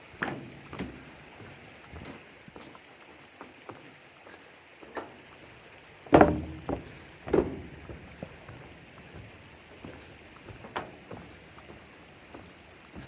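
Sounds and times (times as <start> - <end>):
heavy footsteps on trackbed: 6.1 - 13.0.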